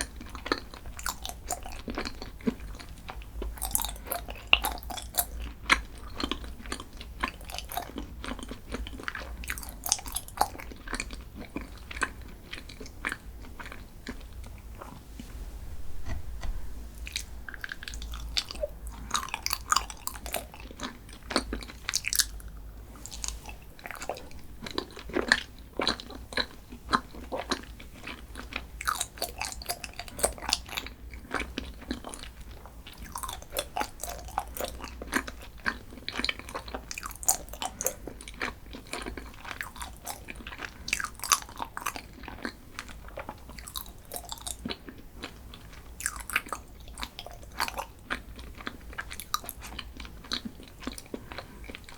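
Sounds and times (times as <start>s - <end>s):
crunchy chewing of snack: 0.0s - 15.4s, 16.0s - 51.9s.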